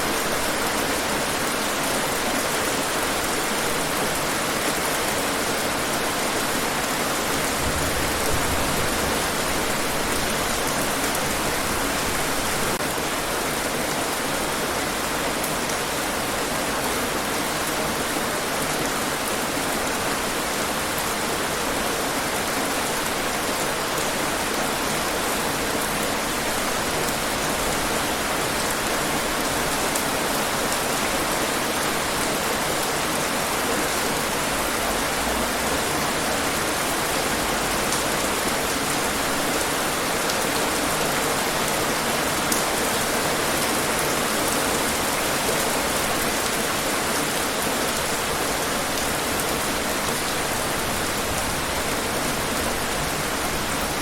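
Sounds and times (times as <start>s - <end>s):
heavy rain on hard surfaces: 0.0s - 54.0s.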